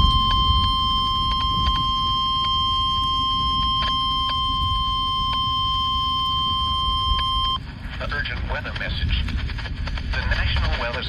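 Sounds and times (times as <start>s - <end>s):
steady single-pitched alarm tone: 0.0s - 7.6s
low rumble: 0.0s - 11.0s
radio static clicks: 0.0s - 11.0s.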